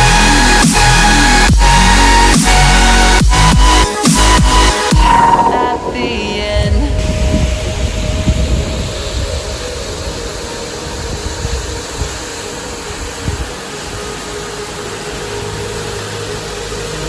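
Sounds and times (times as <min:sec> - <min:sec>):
faint sustained music tones: 0:00.0 - 0:17.0
waterfall roaring: 0:09.0 - 0:17.0.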